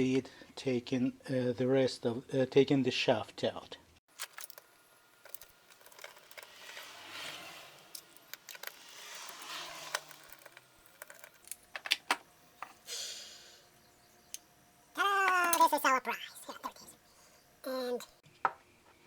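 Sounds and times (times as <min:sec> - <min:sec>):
metal scraping: 0:04.1 - 0:11.8
metal parts clicking: 0:04.1 - 0:12.8.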